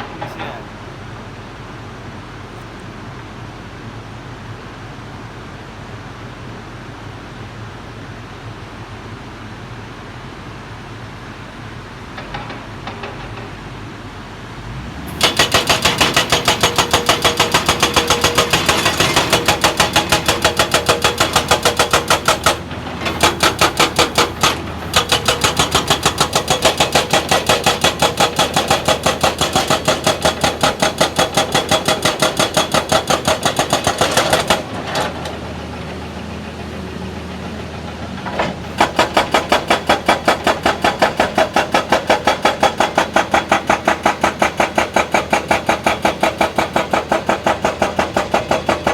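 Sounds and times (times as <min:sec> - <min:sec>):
diesel engine running: 0:10.1 - 0:48.9
hydraulic rock breaker hammering: 0:12.1 - 0:14.0, 0:15.1 - 0:48.9.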